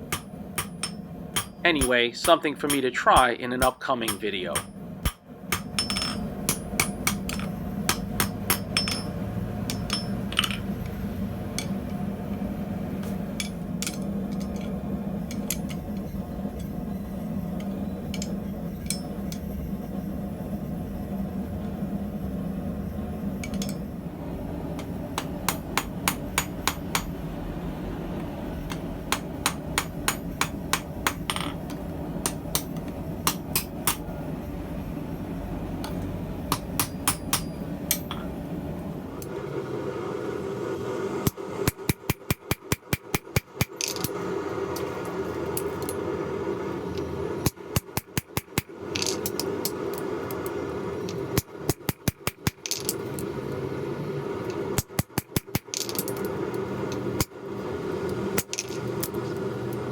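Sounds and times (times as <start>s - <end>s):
hammer striking steel on anvil: 0.0s - 10.7s, 11.5s - 11.9s, 13.0s - 15.8s, 18.1s - 19.4s, 23.4s - 23.8s, 24.8s - 27.2s, 28.6s - 34.2s, 35.8s - 38.3s.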